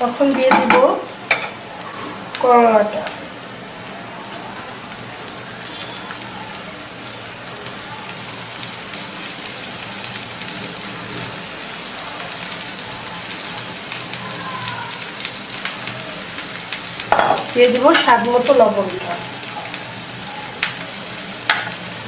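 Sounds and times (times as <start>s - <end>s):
vegetables frying in hot oil: 0.0s - 22.0s.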